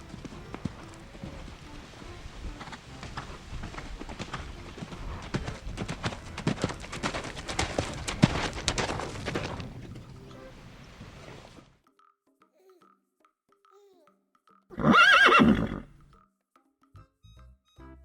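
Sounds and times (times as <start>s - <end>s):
horse hooves clip-clopping: 0.0s - 11.8s, 14.8s - 16.2s.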